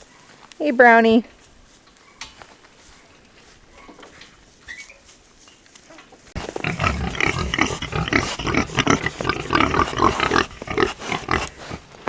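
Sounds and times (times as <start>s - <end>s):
hogs grunting: 6.4s - 12.0s.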